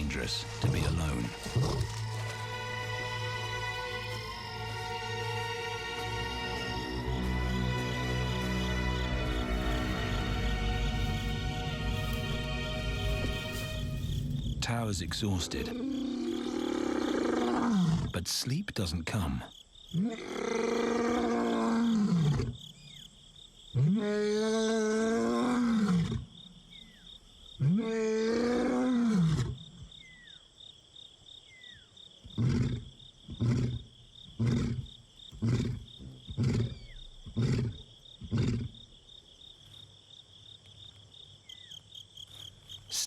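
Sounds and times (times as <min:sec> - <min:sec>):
high insect trill: 0:00.0 - 0:23.8, 0:29.5 - 0:43.0
lion roaring: 0:15.4 - 0:18.2, 0:20.0 - 0:22.6, 0:23.8 - 0:26.3, 0:27.6 - 0:29.6, 0:32.3 - 0:38.8
lion grunting: 0:32.2 - 0:38.8.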